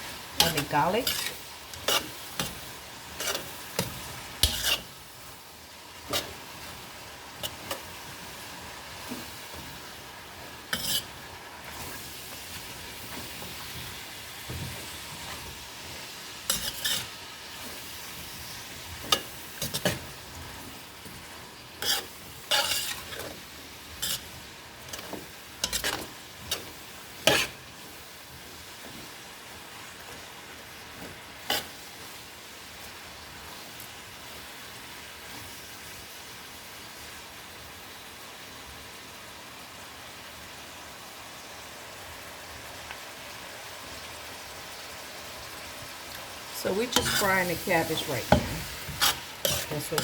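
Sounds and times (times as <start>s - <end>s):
food sizzling in a pan: 0.0s - 50.0s
utensil scraping a pan: 0.4s - 5.0s, 6.0s - 6.4s, 10.7s - 13.6s, 14.5s - 21.2s, 21.8s - 27.8s, 31.0s - 31.8s, 46.6s - 50.0s.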